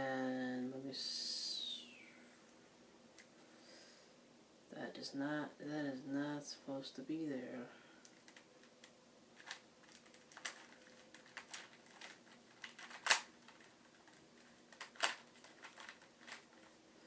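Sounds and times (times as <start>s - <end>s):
plastic puzzle cube clicking: 8.0s - 16.7s.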